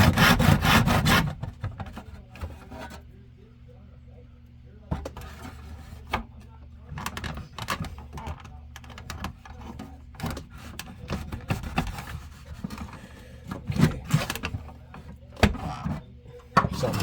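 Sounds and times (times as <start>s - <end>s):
tools tapping and scraping on workbench: 4.9s - 6.3s, 7.0s - 17.0s.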